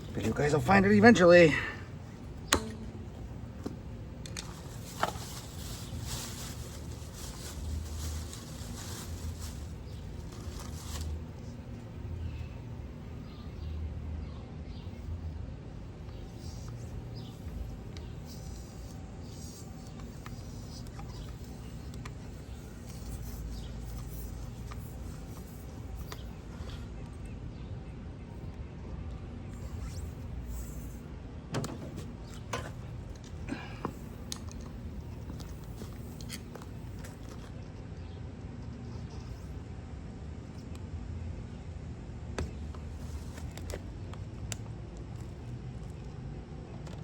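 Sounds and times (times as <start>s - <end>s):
light scraping hiss: 16.2s - 26.9s.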